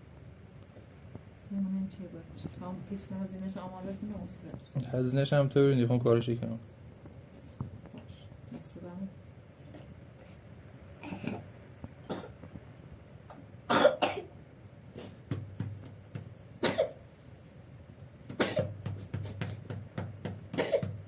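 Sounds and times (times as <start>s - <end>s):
person coughing: 11.0s - 11.5s, 12.1s - 12.4s, 13.7s - 14.3s, 16.6s - 17.0s, 18.4s - 18.8s, 20.6s - 21.0s.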